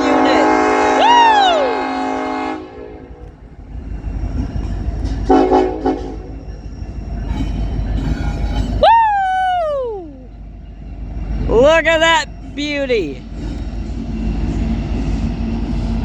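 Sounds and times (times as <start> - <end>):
locomotive air horn: 0.0 - 3.3, 5.2 - 6.3
locomotive engine rumble: 0.0 - 16.0.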